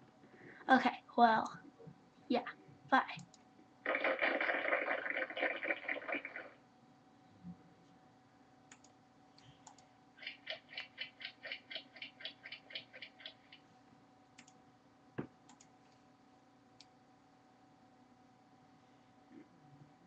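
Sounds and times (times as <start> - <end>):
rapid clicks: 3.9 - 6.6, 9.6 - 13.6.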